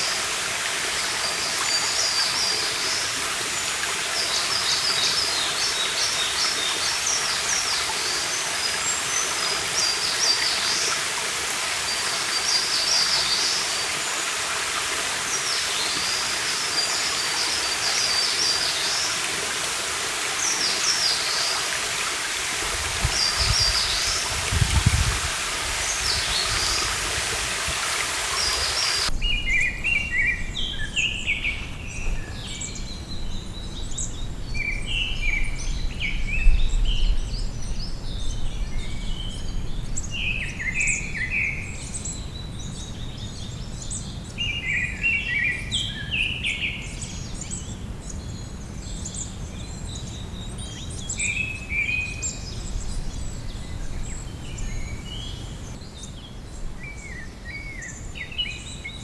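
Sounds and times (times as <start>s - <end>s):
stream water rushing: 0.0s - 29.2s
songbirds singing: 0.0s - 59.0s.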